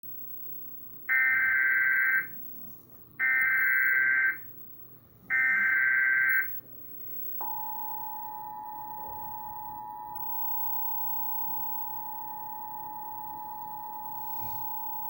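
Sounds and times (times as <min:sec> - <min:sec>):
two-tone attention signal: 0:05.3 - 0:06.5, 0:07.4 - 0:15.0.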